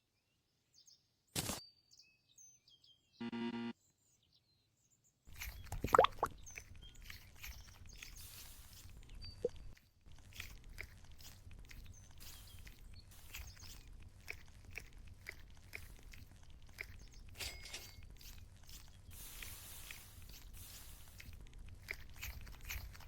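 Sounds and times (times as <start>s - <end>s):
foam toy squeezed crackling: 5.3s - 23.0s.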